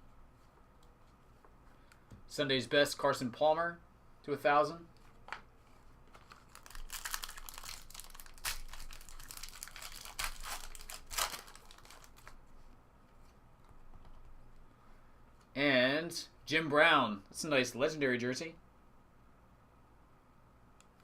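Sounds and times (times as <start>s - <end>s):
trading cards and packaging rustling: 5.0s - 12.5s.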